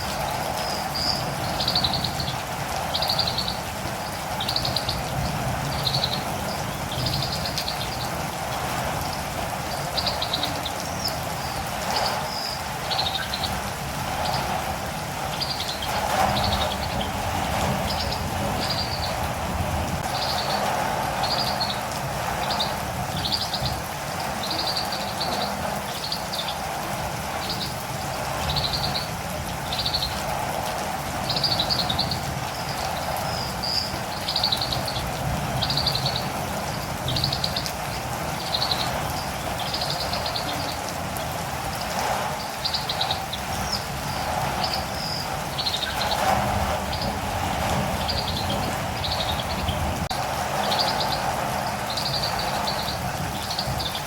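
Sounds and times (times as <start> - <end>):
rain hissing: 0.0 - 54.0
birds giving short high chirps: 42.4 - 54.0.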